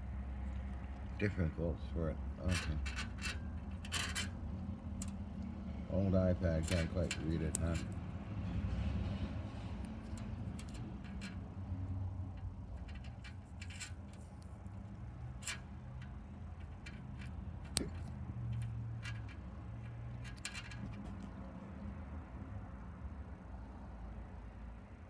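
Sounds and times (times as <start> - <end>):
small handling clicks and taps: 6.6 - 8.1, 9.7 - 11.5, 12.3 - 21.5.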